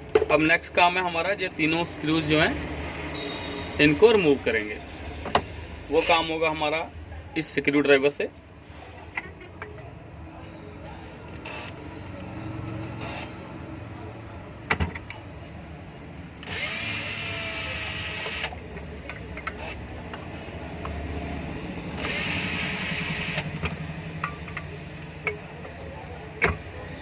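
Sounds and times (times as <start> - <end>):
electric drill running: 16.4 - 18.6, 21.9 - 23.5.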